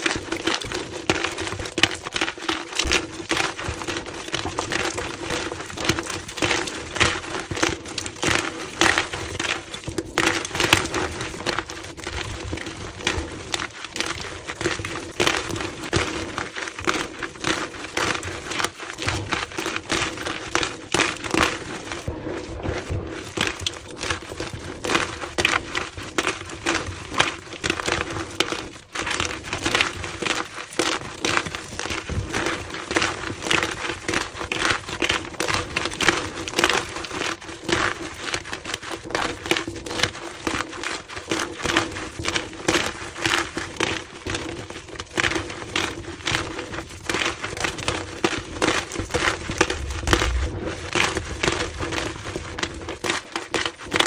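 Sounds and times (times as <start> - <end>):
chalk crushing crackles: 46.0 - 54.0.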